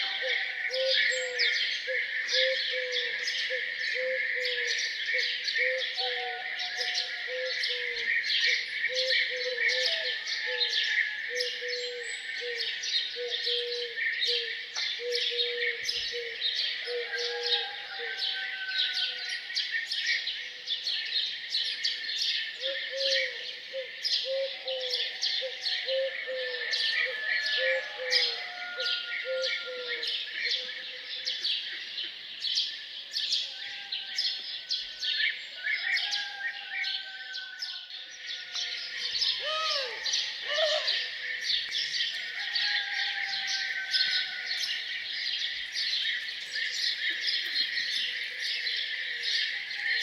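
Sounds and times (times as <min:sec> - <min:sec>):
small birds chirping and singing: 0:00.0 - 0:50.0
low arching bird calls: 0:38.4 - 0:45.2.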